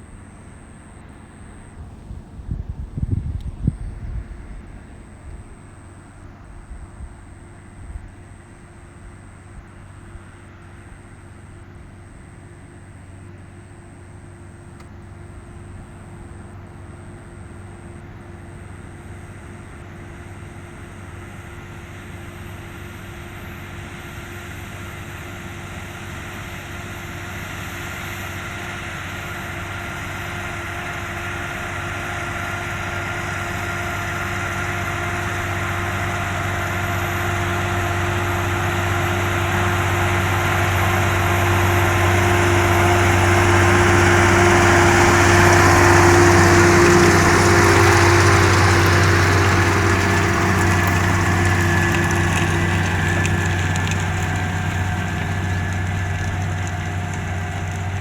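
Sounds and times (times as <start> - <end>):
tractor diesel engine running: 28.5 - 58.0.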